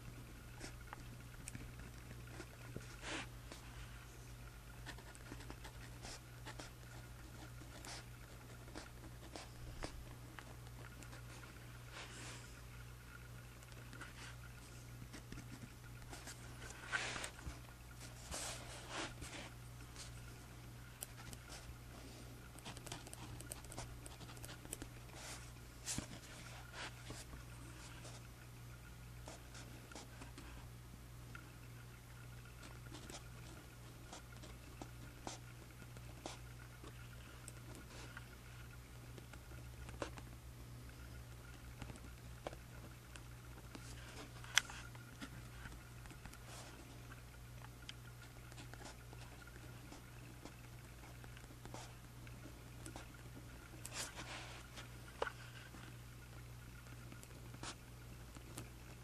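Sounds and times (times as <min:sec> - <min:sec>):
faint electrical hum: 0:00.0 - 0:59.0
pen scratching on paper: 0:04.8 - 0:12.5, 0:21.0 - 0:28.2.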